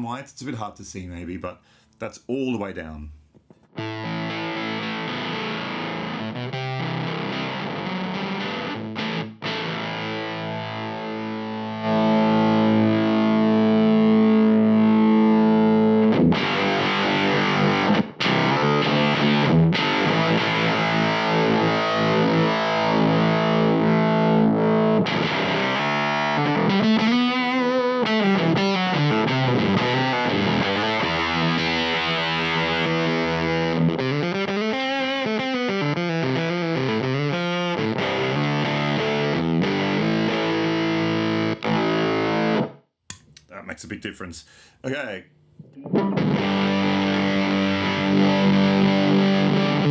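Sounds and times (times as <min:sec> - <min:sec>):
distorted electric guitar: 0:03.8 - 0:42.8, 0:45.6 - 0:49.9.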